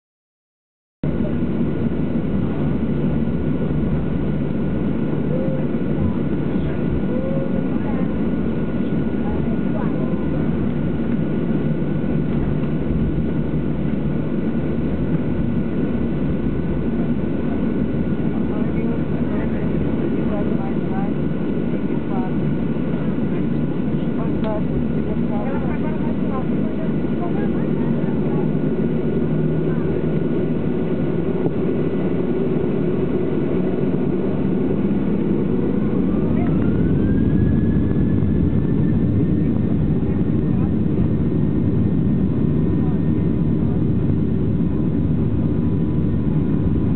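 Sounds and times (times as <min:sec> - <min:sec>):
jet engines rumbling: 0:01.0 - 0:46.9
jet engine whine rising: 0:01.1 - 0:46.9.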